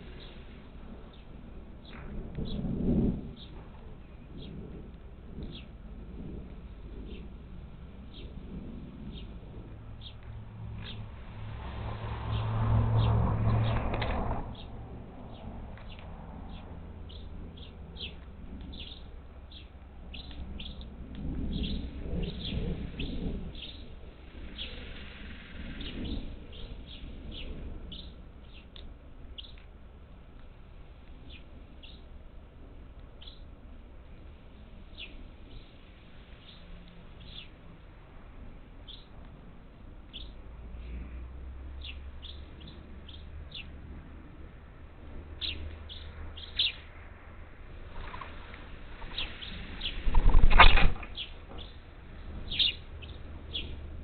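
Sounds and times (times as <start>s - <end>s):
low rumble: 0.0s - 54.0s
parakeets chirping: 41.8s - 43.7s, 45.4s - 46.9s, 49.0s - 51.8s, 52.4s - 53.8s.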